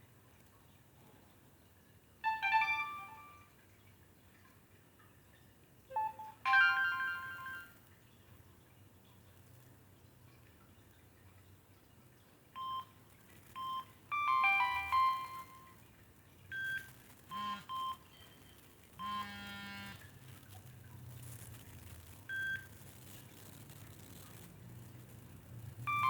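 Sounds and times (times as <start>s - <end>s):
mobile phone ringtone beeps: 2.2s - 3.4s, 5.9s - 7.8s, 13.6s - 15.8s, 16.5s - 18.0s.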